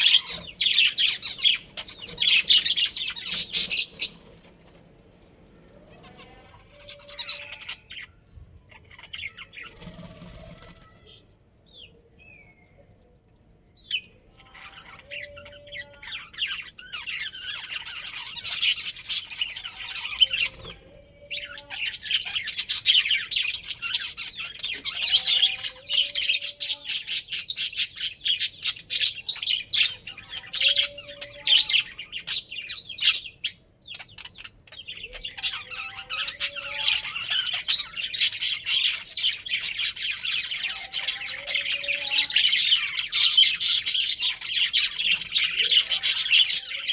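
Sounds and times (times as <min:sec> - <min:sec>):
budgerigars chirping: 0:00.0 - 0:04.5, 0:13.9 - 0:46.9.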